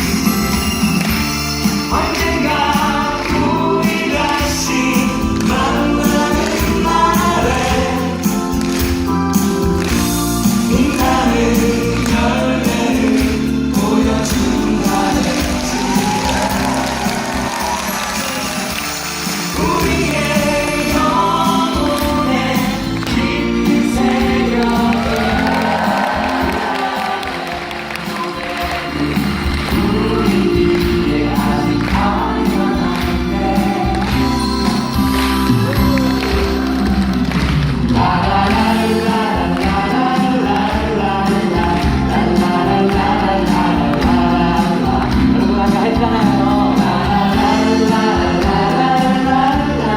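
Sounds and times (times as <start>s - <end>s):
band accompaniment: 0.0s - 49.9s
several people singing: 1.0s - 37.0s, 37.9s - 49.9s.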